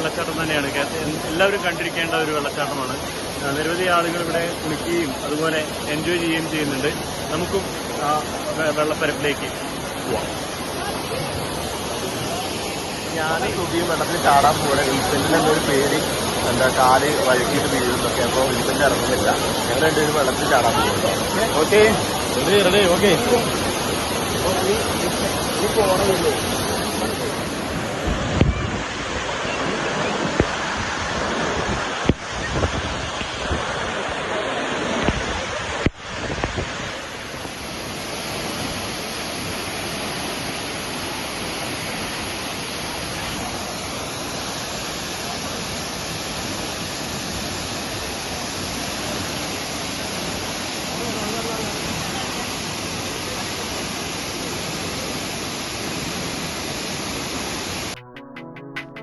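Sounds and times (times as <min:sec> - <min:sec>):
water rushing over rocks: 0:00.0 - 0:58.0.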